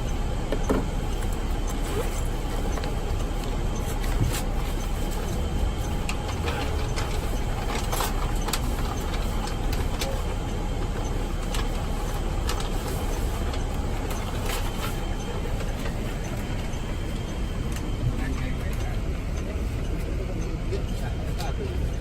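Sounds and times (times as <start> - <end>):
vehicle engine rumbling: 0.0 - 22.0.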